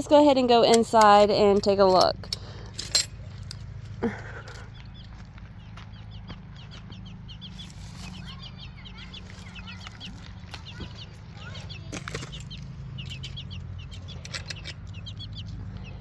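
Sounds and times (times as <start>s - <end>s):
rattles or rustles: 1.0s - 4.7s, 9.3s - 15.2s
chick peeping: 4.6s - 16.0s.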